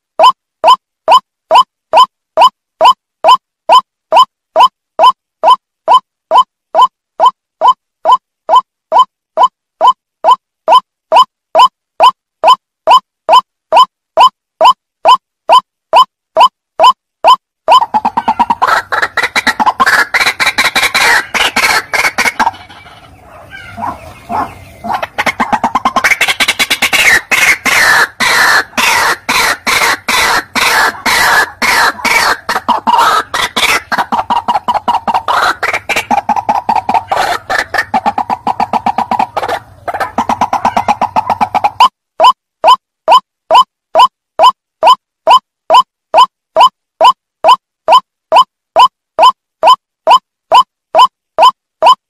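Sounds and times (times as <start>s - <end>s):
bird calling harsh repeated notes: 0.2s - 52.0s.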